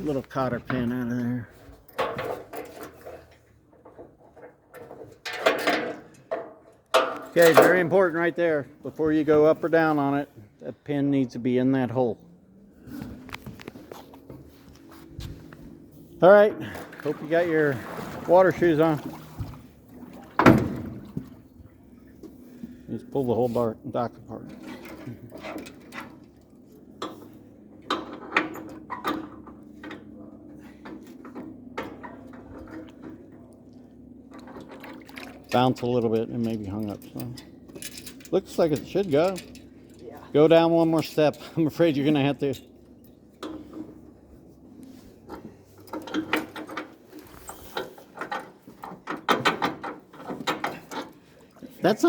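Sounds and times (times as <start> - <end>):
metal dock steps clanking: 0.0 - 9.9, 16.2 - 22.9, 24.2 - 52.0
dock steps clicking and knocking: 1.7 - 8.2, 44.8 - 51.6.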